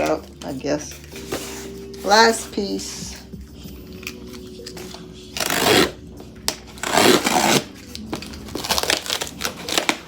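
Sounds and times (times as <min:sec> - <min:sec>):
packaging ripping: 0:06.8 - 0:10.0
packaging crinkling and clicks: 0:07.8 - 0:10.0.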